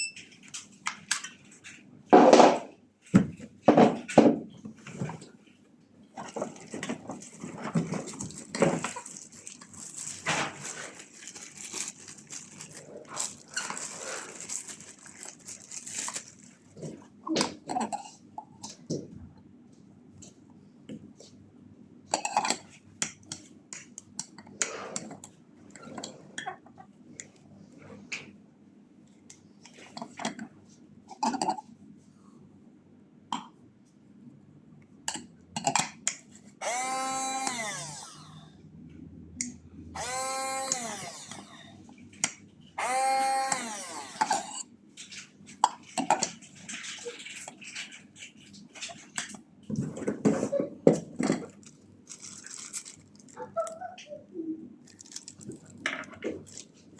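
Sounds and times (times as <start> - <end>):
small electric motor whirring: 36.6 - 38.6, 40.0 - 41.8, 42.8 - 44.6.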